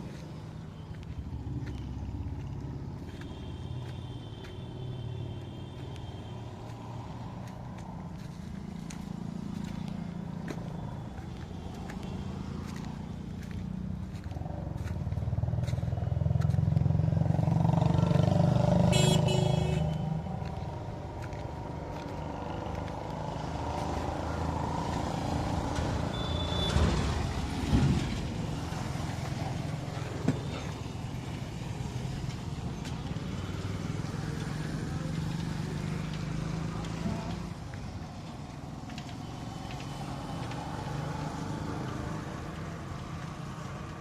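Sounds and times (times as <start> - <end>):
vehicle engine passing by: 11.7 - 44.0.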